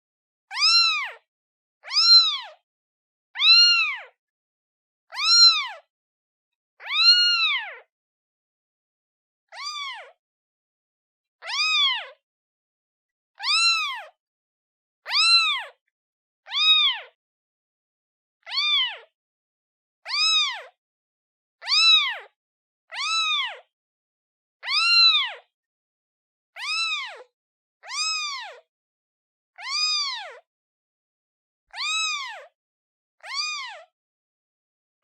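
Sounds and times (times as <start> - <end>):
kitten meowing: 0.5 - 1.2, 1.8 - 2.6, 3.4 - 4.2, 5.1 - 5.8, 6.8 - 7.9, 9.5 - 10.2, 11.4 - 12.1, 13.4 - 14.2, 15.1 - 15.8, 16.5 - 17.2, 18.5 - 19.1, 20.1 - 20.8, 21.6 - 22.3, 22.9 - 23.7, 24.6 - 25.5, 26.6 - 27.2, 27.8 - 28.6, 29.6 - 30.4, 31.7 - 32.5, 33.2 - 33.9.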